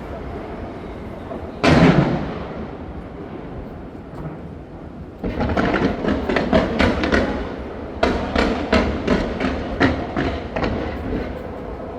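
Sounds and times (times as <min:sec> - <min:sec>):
fireworks bangs and crackles: 0:01.6 - 0:02.8, 0:05.1 - 0:11.6.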